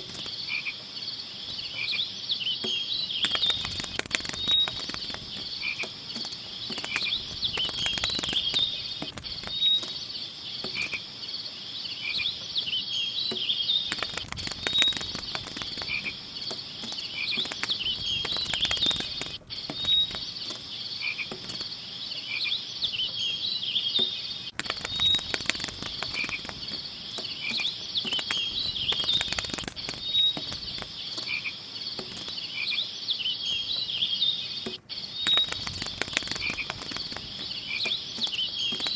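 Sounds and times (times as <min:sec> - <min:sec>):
high-pitched insect chorus: 0:00.0 - 0:22.9, 0:24.4 - 0:33.8, 0:34.9 - 0:38.9
frog-like calls: 0:00.1 - 0:00.8, 0:01.5 - 0:23.2, 0:24.4 - 0:33.7, 0:34.4 - 0:38.9
sharp clicks: 0:02.6 - 0:10.0, 0:13.3 - 0:20.6, 0:21.2 - 0:21.7, 0:24.5 - 0:31.3, 0:32.0 - 0:32.4, 0:34.6 - 0:38.9.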